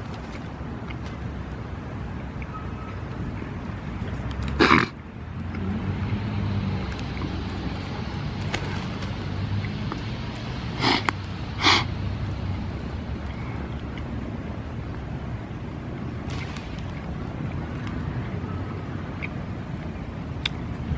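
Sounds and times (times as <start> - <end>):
loud forced breaths: 10.7 - 12.0.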